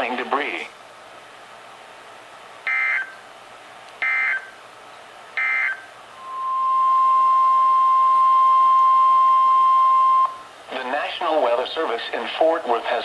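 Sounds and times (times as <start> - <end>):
steady single-tone attention signal: 2.7 - 3.2, 4.0 - 4.5, 5.4 - 10.5
digital data tone bursts: 5.4 - 10.4.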